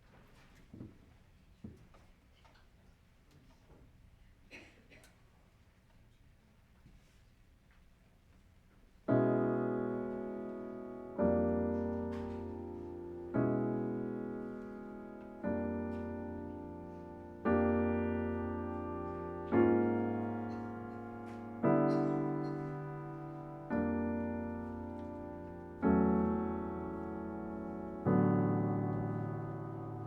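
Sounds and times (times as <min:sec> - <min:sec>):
piano playing slow chords: 0:09.1 - 0:30.0.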